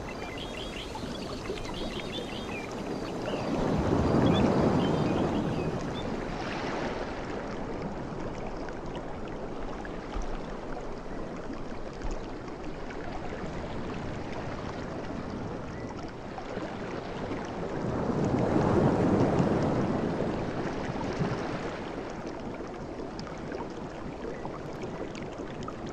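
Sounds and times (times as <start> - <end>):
sea waves washing on shore: 0.0 - 8.8, 13.4 - 23.6.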